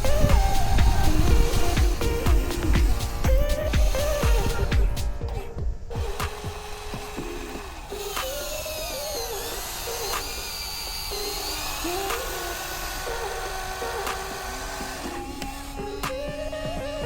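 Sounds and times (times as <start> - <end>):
small electric motor whining: 0.0 - 17.0
sharp clicks: 6.1 - 16.5.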